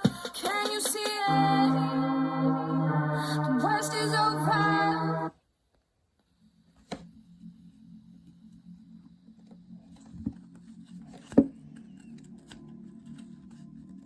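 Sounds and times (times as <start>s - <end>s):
low steady hum: 1.3s - 5.3s.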